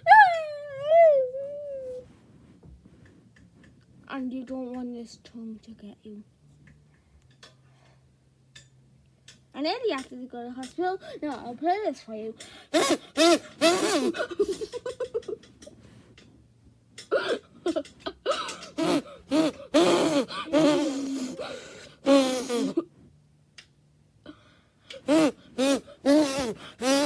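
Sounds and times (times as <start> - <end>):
child gasping and sing-song noises: 11.0 - 11.4, 18.3 - 22.8, 24.3 - 27.0.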